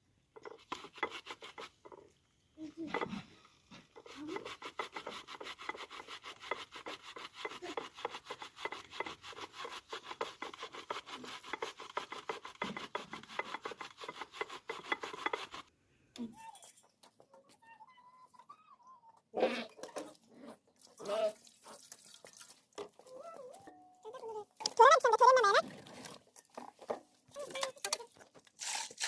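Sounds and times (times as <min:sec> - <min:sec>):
rapid rubbing or scraping strokes: 0:00.6 - 0:01.9, 0:03.9 - 0:15.7.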